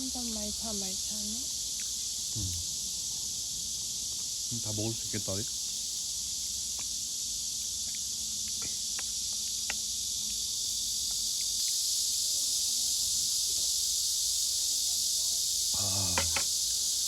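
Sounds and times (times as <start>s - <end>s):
insects chirring: 0.0s - 17.0s.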